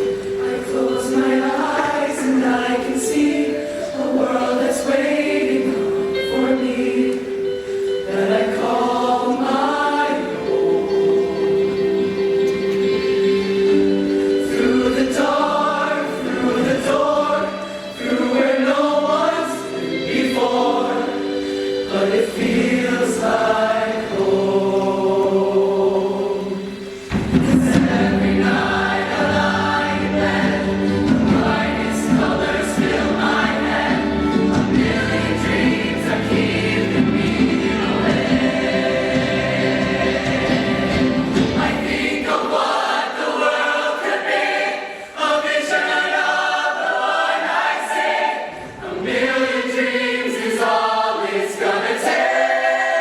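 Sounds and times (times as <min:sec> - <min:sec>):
show choir singing: 0:00.0 - 0:53.0
band playing: 0:05.8 - 0:42.8.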